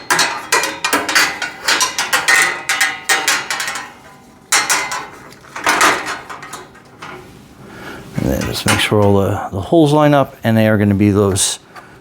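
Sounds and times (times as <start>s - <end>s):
metal parts clacking and rattling: 0.0s - 7.3s.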